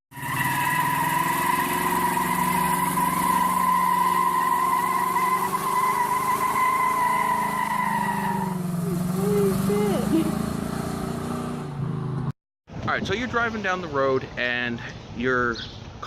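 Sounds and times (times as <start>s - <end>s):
vehicle engine running: 0.1s - 12.3s.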